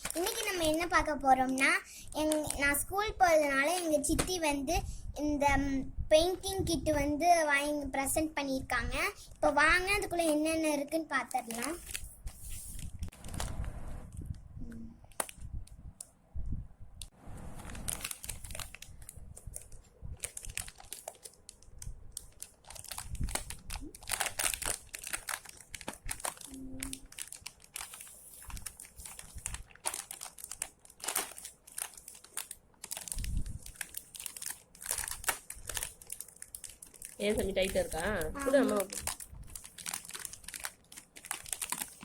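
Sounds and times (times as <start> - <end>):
packaging crinkling and tearing: 0.0 - 4.4, 11.2 - 14.4, 15.0 - 15.6, 17.6 - 42.0.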